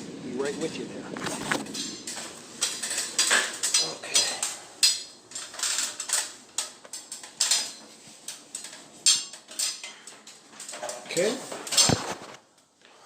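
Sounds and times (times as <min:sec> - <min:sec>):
hard objects clinking together: 0:01.6 - 0:12.3.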